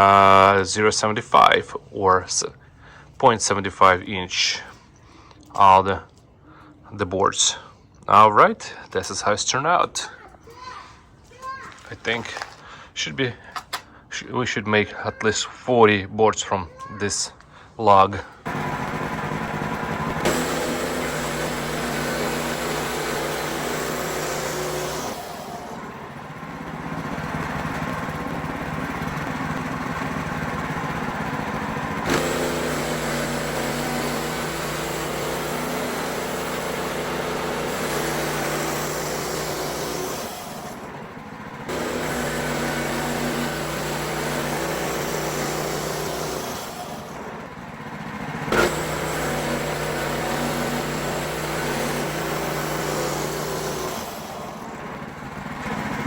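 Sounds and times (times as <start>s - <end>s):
bandsaw sawmill cutting wood: 0.0s - 1.6s, 17.9s - 56.0s.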